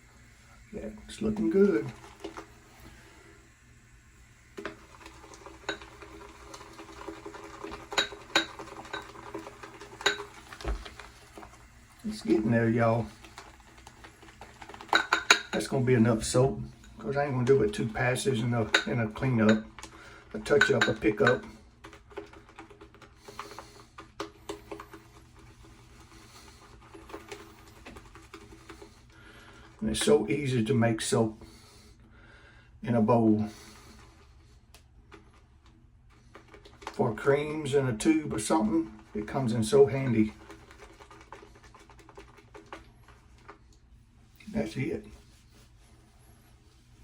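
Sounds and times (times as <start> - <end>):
shaving brush swirling lather: 0.0 - 31.9, 36.2 - 47.0
bristles ticking against bowl: 4.6 - 11.1, 12.0 - 15.8
brush clinking against bowl: 7.7 - 10.4, 14.9 - 16.1, 16.7 - 19.8, 20.4 - 21.5.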